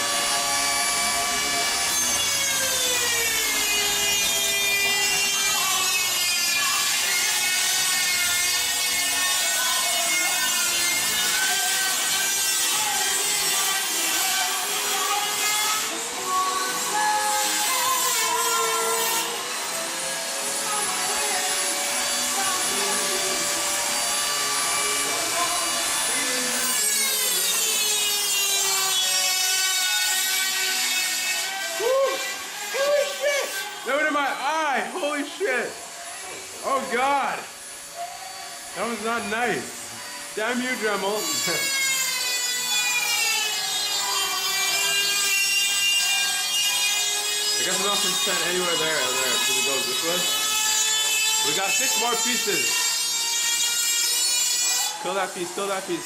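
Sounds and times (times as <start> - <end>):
rotary tool cutting whine: 0.0 - 34.1, 34.8 - 56.0
gritty grinding hiss: 38.7 - 56.0.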